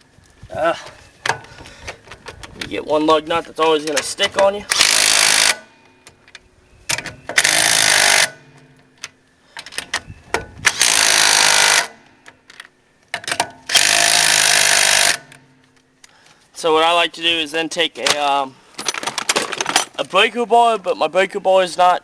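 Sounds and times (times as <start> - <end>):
impact wrench: 4.7 - 5.7, 7.3 - 8.4, 10.6 - 12.0, 13.4 - 15.3.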